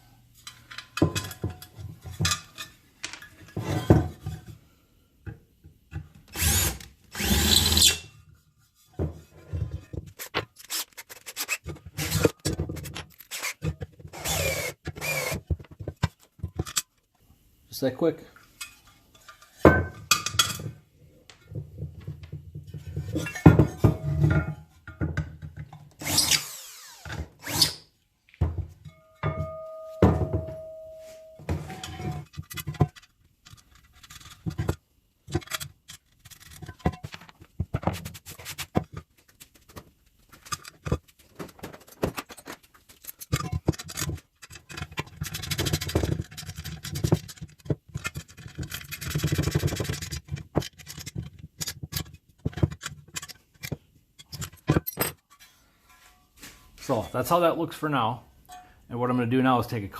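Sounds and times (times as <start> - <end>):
metal tools clanking: 28.8 - 33.1.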